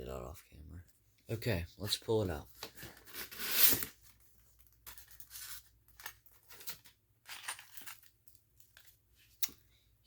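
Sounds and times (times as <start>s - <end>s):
paper and cardboard rustling: 2.5s - 9.0s.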